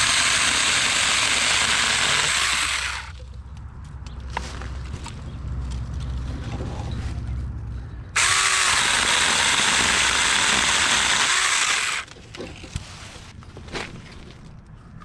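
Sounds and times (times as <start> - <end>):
electric chainsaw cutting branch: 0.0 - 3.1, 8.2 - 12.1.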